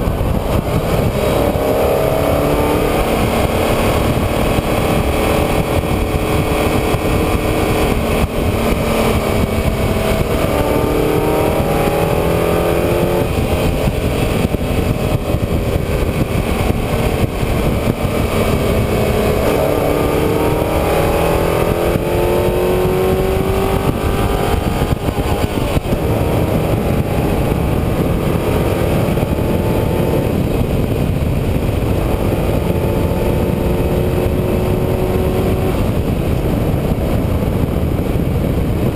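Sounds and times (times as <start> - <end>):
vehicle engine revving: 0.0 - 38.9
wind and road noise: 0.0 - 38.9.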